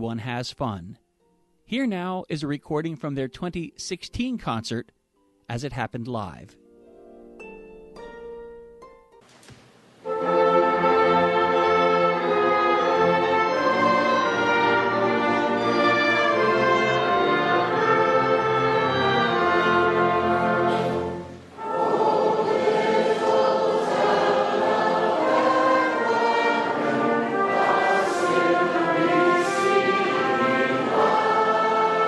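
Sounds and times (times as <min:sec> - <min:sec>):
orchestra playing: 0:09.9 - 0:32.0
choir singing: 0:10.0 - 0:32.0.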